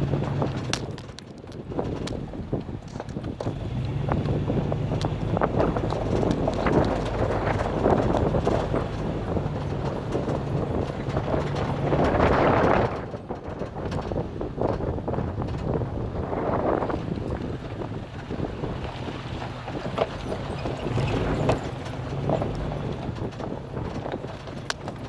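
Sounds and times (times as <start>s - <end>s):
truck engine running: 0.0s - 25.0s
wind buffeting microphone: 0.0s - 25.0s
tyres knocking and crunching on rocks: 0.1s - 14.9s.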